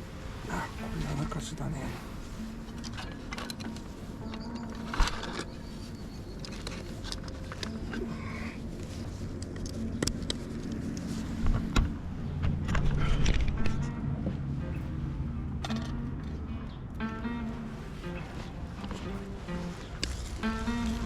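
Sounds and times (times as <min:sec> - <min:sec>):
vehicle engine humming: 0:00.0 - 0:21.0
low rumble: 0:06.8 - 0:21.0.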